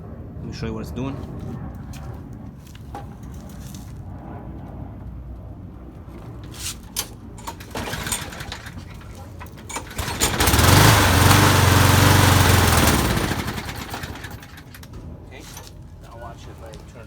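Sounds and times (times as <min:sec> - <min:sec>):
lawn mower engine starting and stalling: 0:06.6 - 0:15.7.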